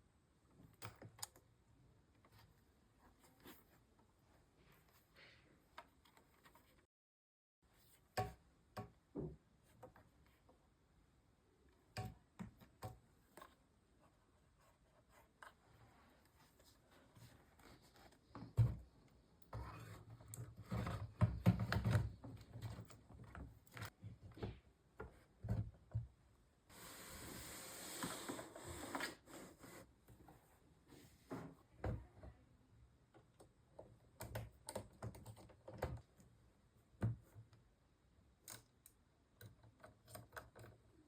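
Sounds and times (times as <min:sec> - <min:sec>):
small clicks and knocks: 0:38.4 - 0:41.0.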